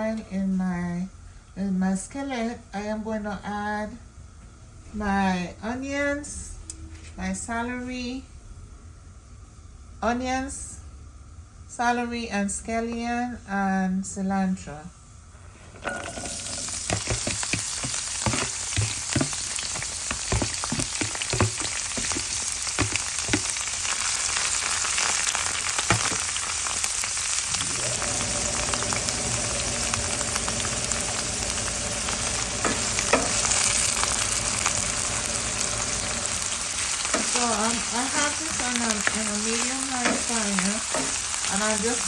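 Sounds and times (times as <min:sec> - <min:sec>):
vegetables sizzling in oil: 0:15.3 - 0:42.0
utensil scraping in pan: 0:15.4 - 0:26.4, 0:27.6 - 0:42.0.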